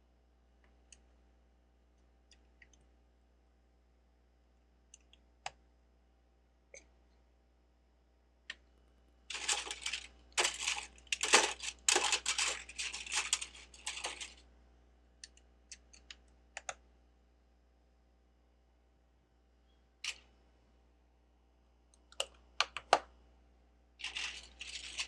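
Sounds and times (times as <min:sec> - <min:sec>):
plastic bricks clattering: 0:09.3 - 0:14.4, 0:24.0 - 0:25.0.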